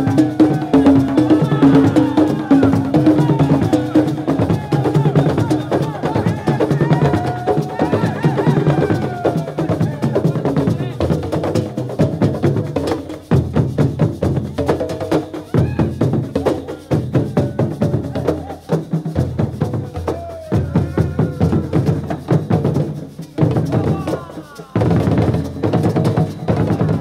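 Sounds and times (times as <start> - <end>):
voices calling: 0.0 - 11.4, 19.8 - 22.2, 23.6 - 27.0
percussion music with drums: 0.0 - 27.0.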